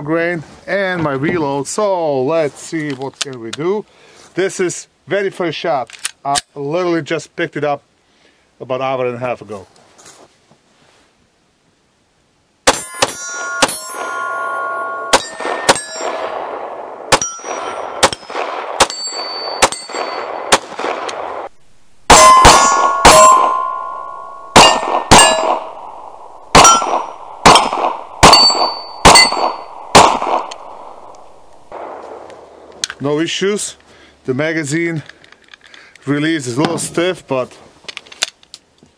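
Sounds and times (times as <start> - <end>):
pistol shots: 12.7 - 14.3, 15.1 - 21.5, 22.1 - 32.6
metallic ring: 12.7 - 16.5, 17.2 - 18.3, 18.9 - 20.4, 22.1 - 29.9.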